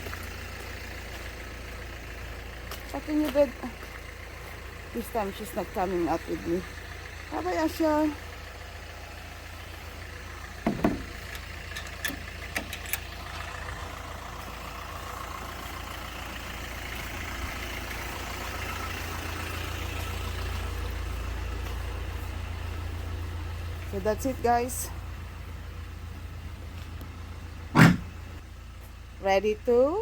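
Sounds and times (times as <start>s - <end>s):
van engine idling: 0.0s - 30.0s
thump: 10.6s - 11.1s, 27.7s - 28.1s.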